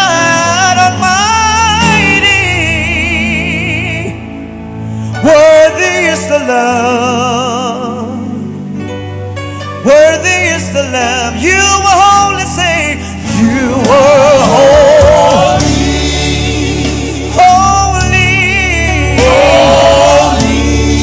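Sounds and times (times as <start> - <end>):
keyboard and bass backing: 0.0 - 21.0
singer with vibrato: 9.8 - 21.0
choir singing: 13.3 - 21.0.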